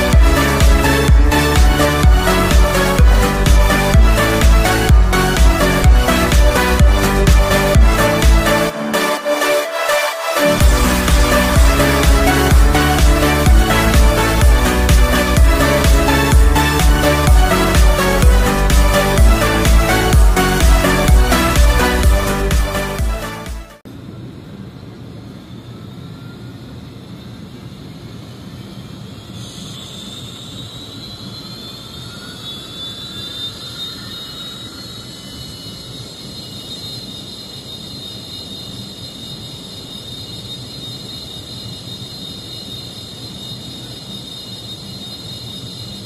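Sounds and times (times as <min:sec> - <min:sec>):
turbine whine rising in pitch: 0:00.0 - 0:23.8, 0:27.0 - 0:46.0
low rumble: 0:10.6 - 0:23.4.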